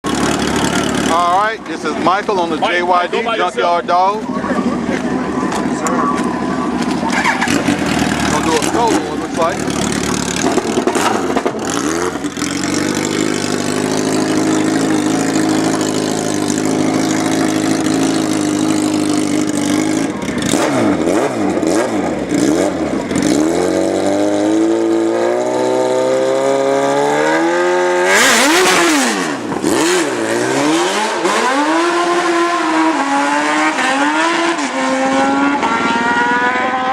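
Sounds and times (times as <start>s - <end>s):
drag car engine revving: 0.0s - 3.0s, 4.6s - 36.9s
tires breaking loose: 5.0s - 13.6s.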